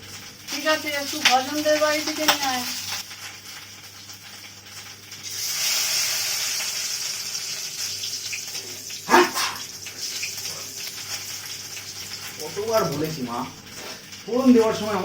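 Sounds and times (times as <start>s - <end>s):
spices sizzling in hot oil: 0.0s - 15.0s
man sneezing loudly: 9.1s - 9.7s.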